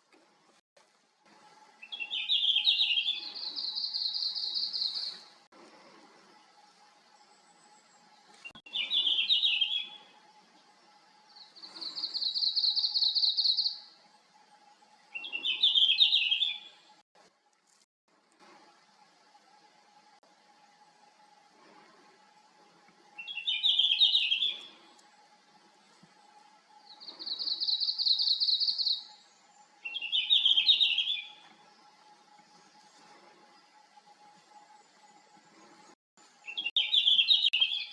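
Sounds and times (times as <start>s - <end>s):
bird singing trills and warbles: 1.8s - 5.4s, 6.3s - 10.2s, 11.3s - 16.9s, 23.2s - 25.0s, 26.8s - 37.9s.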